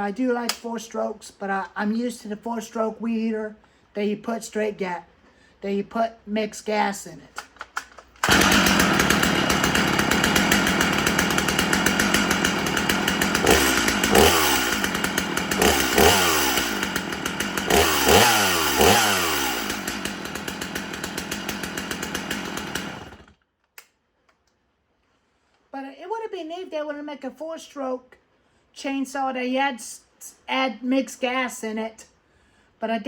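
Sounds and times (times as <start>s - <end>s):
chainsaw engine revving: 8.2s - 23.4s.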